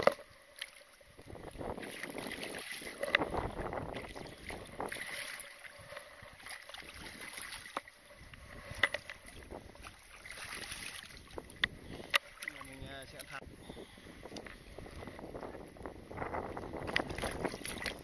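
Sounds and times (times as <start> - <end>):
water splashing at bank: 0.0 - 13.4, 16.7 - 18.0
wind on microphone: 1.0 - 18.0.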